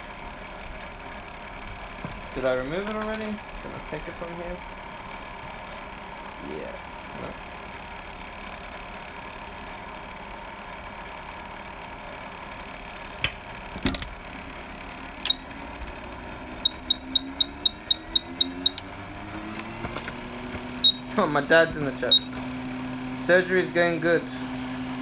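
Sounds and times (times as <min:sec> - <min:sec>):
electronic equipment hum: 0:13.2 - 0:25.0
sharp clicks: 0:15.2 - 0:21.0
short high beeps: 0:16.6 - 0:18.8, 0:20.8 - 0:21.2, 0:22.0 - 0:22.4.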